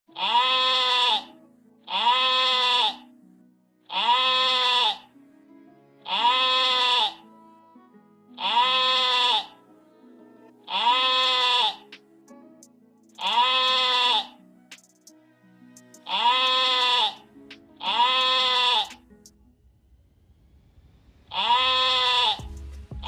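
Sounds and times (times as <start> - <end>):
sheep bleating: 0.1 - 3.1, 3.9 - 5.1, 6.0 - 7.2, 8.4 - 9.6, 10.6 - 11.9, 13.2 - 14.4, 16.1 - 17.2, 17.8 - 18.9, 21.3 - 22.4.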